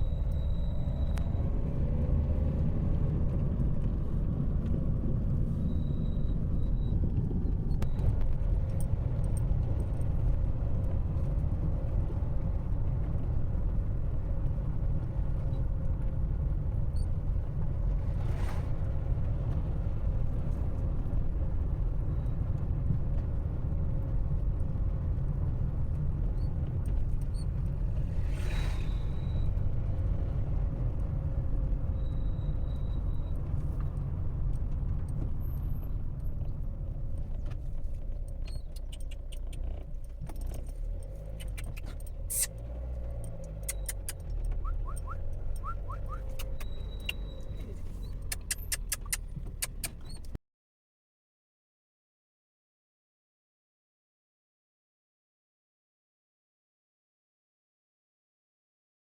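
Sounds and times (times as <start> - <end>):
car rumbling in motion: 0.0 - 50.4
brief whooshes: 27.8 - 29.5.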